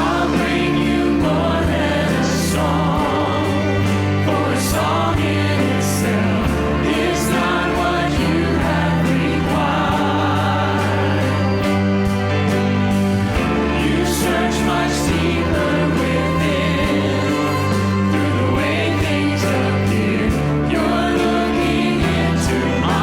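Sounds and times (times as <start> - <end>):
voices singing: 0.0 - 23.0
worship band playing: 0.0 - 23.0.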